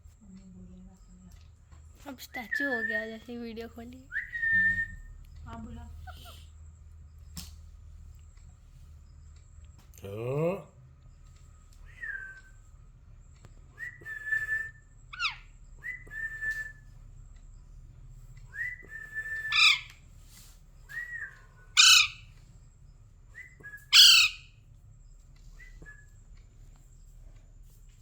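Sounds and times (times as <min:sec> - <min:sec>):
loud parrot calls: 0:15.2 - 0:15.5, 0:19.4 - 0:20.0, 0:21.1 - 0:22.3, 0:23.9 - 0:24.6
parrot whistled notes: 0:18.6 - 0:19.9, 0:21.0 - 0:22.3, 0:23.4 - 0:24.5.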